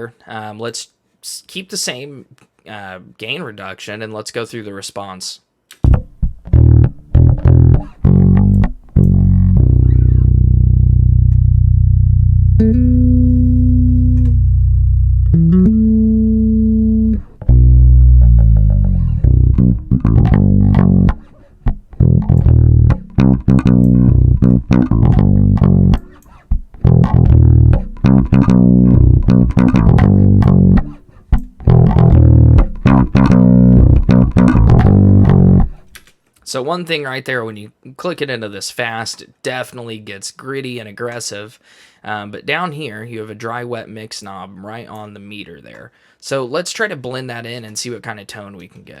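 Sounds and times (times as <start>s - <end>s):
electric bass notes: 5.8s - 36.0s.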